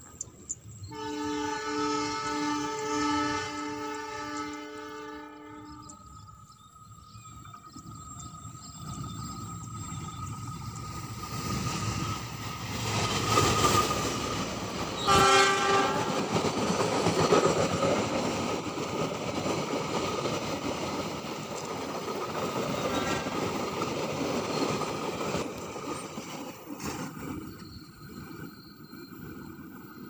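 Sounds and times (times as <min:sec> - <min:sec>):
train horn blast: 0:00.8 - 0:06.0, 0:14.9 - 0:16.4
train wheels clattering on rails: 0:07.2 - 0:30.0.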